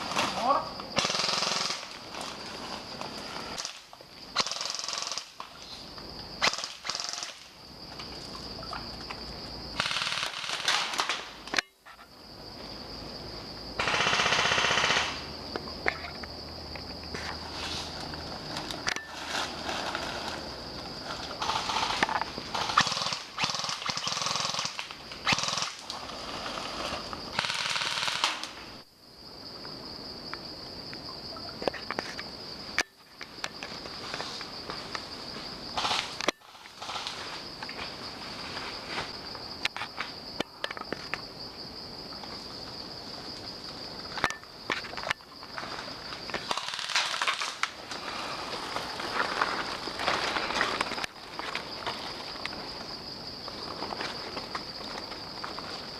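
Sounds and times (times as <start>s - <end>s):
high insect buzz: 0.0s - 55.9s
rustling through undergrowth: 17.0s - 23.1s, 44.8s - 55.9s.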